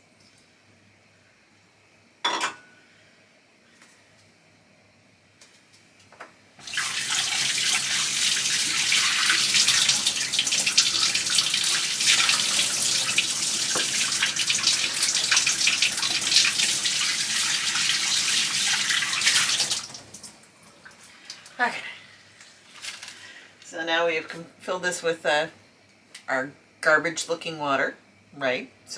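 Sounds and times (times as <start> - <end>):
water running and splashing: 6.6 - 21.6.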